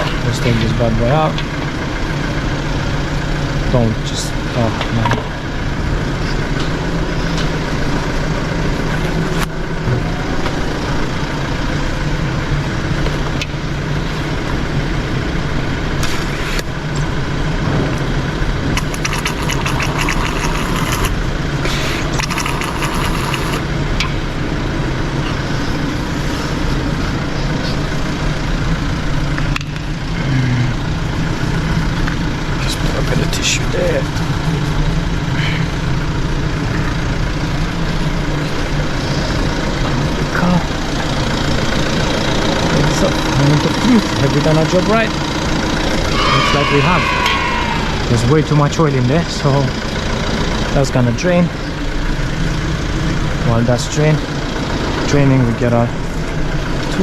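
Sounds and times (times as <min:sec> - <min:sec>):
car engine idling: 0:00.0 - 0:57.0
rapid clicking: 0:18.7 - 0:21.2, 0:22.0 - 0:23.6.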